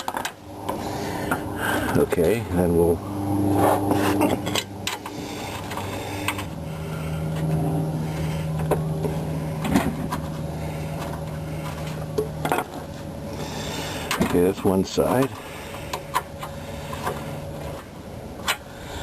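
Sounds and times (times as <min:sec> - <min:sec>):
small motor humming: 0:00.0 - 0:19.0.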